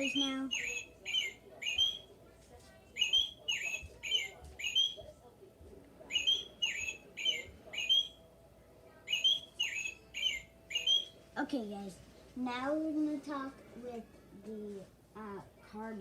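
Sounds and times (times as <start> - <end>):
recorded robin calls from toy: 0.0 - 2.1, 3.0 - 5.0, 6.1 - 8.2, 9.0 - 11.2.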